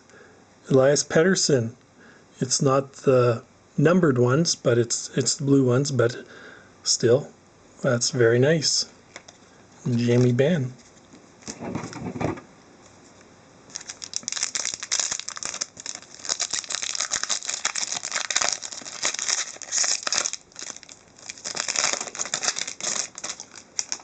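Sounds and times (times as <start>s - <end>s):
wrapper tearing and crinkling: 13.7s - 24.0s.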